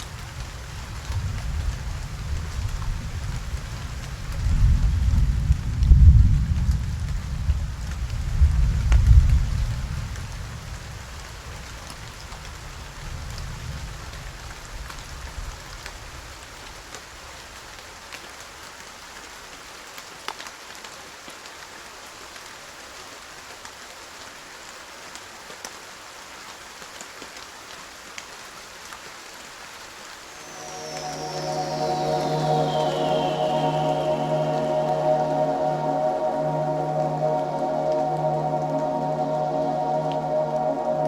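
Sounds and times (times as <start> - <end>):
steady rain falling: 0.0 - 41.0.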